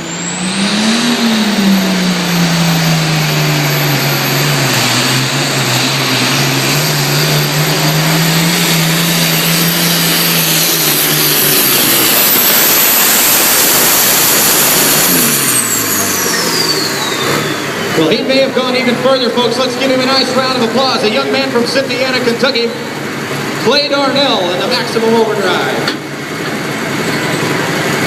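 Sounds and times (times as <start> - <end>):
turbocharger whistle: 0.0 - 21.2
diesel tractor engine at full throttle: 0.0 - 28.0.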